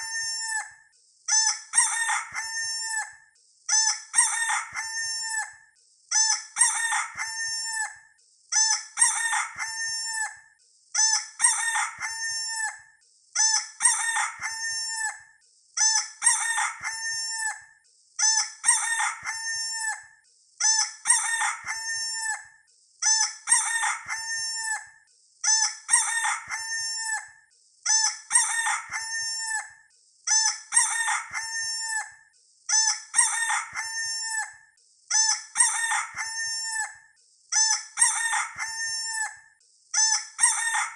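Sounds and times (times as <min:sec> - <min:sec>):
rooster crowing: 0:01.8 - 0:03.2, 0:04.2 - 0:05.6, 0:06.6 - 0:08.0, 0:09.0 - 0:10.4, 0:11.4 - 0:12.8, 0:13.8 - 0:15.2, 0:16.2 - 0:17.6, 0:18.6 - 0:20.0, 0:21.1 - 0:22.6, 0:23.5 - 0:24.9, 0:25.9 - 0:27.4, 0:28.4 - 0:29.8, 0:30.8 - 0:32.2, 0:33.2 - 0:34.5, 0:35.6 - 0:36.9, 0:38.0 - 0:39.4, 0:40.4 - 0:40.9.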